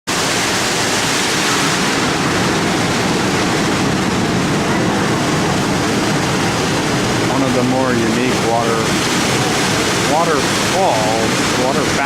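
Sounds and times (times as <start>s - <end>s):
indoor waterfall rushing: 0.1s - 12.0s.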